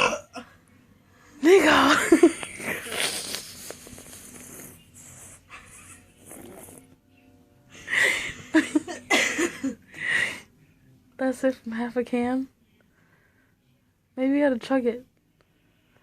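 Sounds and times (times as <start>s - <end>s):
breathy voiced sounds: 0.0s - 7.0s.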